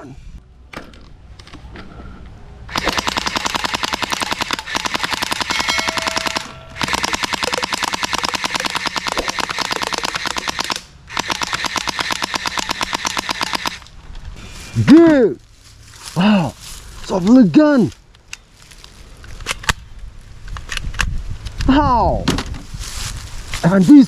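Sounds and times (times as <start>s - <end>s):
toy gun rapid fire: 2.7s - 13.8s.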